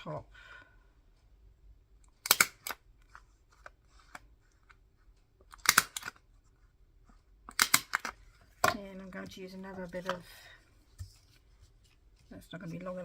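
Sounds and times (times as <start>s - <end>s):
stapler clicking: 2.2s - 2.8s, 5.5s - 6.1s, 7.5s - 8.1s
paper handling: 8.0s - 13.0s.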